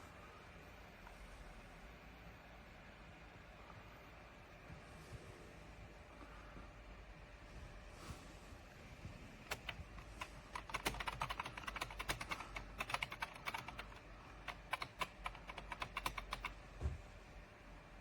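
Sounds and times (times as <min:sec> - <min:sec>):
computer keyboard typing: 0:09.4 - 0:16.6.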